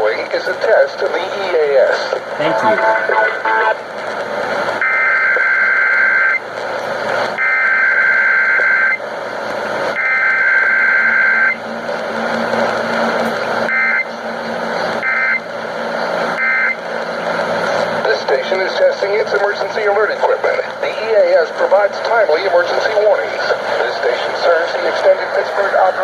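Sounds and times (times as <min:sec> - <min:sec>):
radio hiss: 0:00.0 - 0:26.0
two-tone digital warble bursts: 0:02.4 - 0:03.8.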